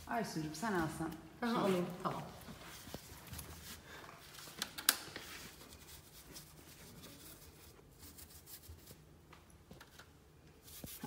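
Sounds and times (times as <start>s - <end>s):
scratchy rubbing on painted surface: 5.3s - 9.0s, 10.6s - 11.0s.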